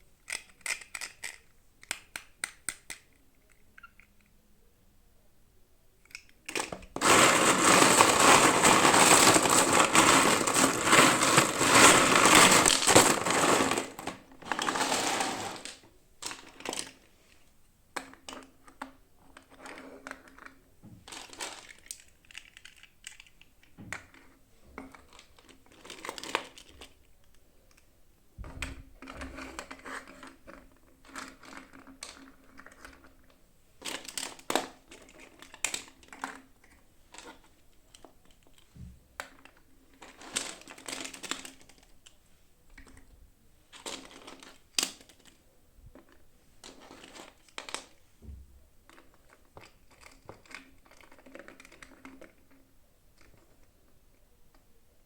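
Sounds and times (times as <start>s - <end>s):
packaging tearing: 6.6s - 15.8s
plastic packaging crinkling: 6.6s - 17.0s, 25.1s - 27.0s, 39.4s - 41.9s, 48.9s - 52.5s.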